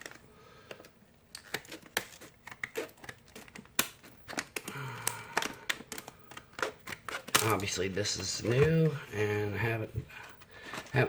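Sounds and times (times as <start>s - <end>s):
plastic crinkling: 0.0s - 11.0s
plastic snapping: 0.0s - 11.0s
scissors snipping plastic: 0.0s - 11.0s.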